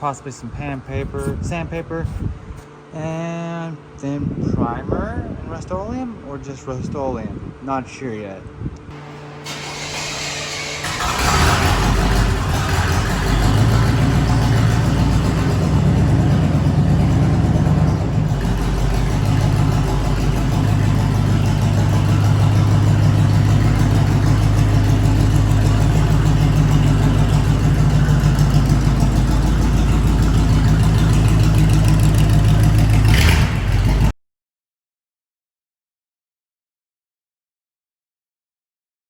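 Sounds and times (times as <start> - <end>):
vehicle engine running: 8.9 - 34.1.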